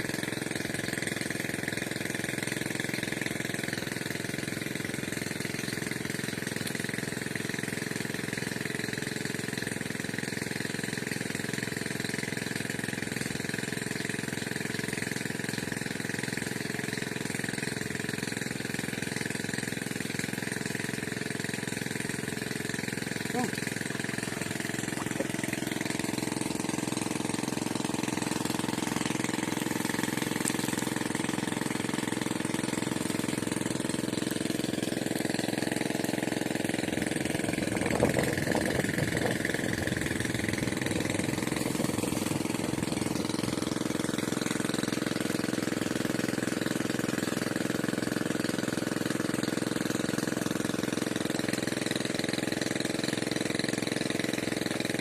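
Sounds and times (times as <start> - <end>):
motor humming: 20.5 - 46.4.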